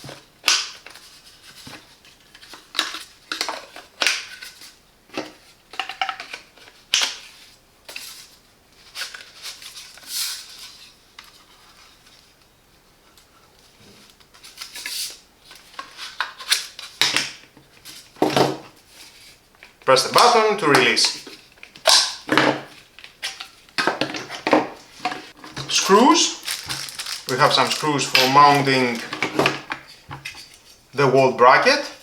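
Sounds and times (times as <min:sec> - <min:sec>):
plastic nozzles clicking and rattling: 0:19.6 - 0:30.6.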